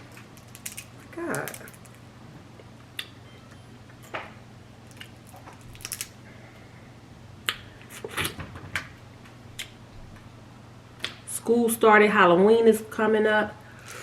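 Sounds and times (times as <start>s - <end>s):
crab shells cracking: 0.0s - 2.0s, 4.9s - 6.2s
low steady hum: 0.0s - 14.0s.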